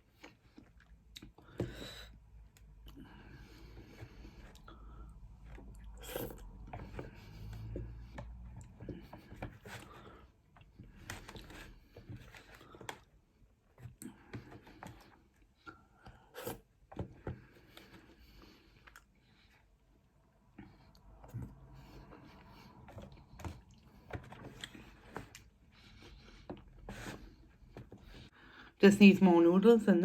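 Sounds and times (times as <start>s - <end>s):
chewing with crunches: 0.0s - 1.6s, 17.4s - 19.6s, 20.5s - 26.7s.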